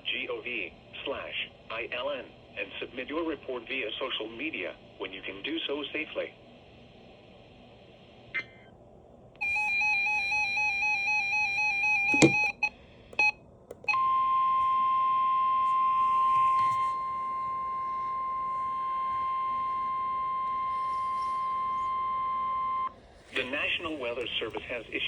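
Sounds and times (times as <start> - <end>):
warbling electronic alert beep: 12.1 - 12.5.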